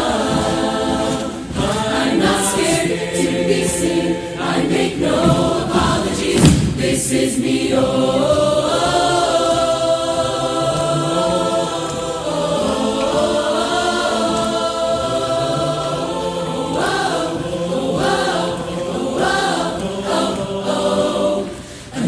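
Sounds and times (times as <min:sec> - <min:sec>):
chorus singing a cappella: 0:00.0 - 0:22.0.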